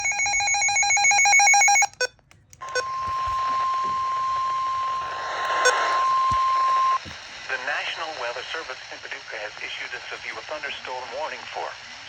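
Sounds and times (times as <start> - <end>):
steady warning alarm tone: 0.0 - 7.0
faint radio hiss: 3.1 - 12.0.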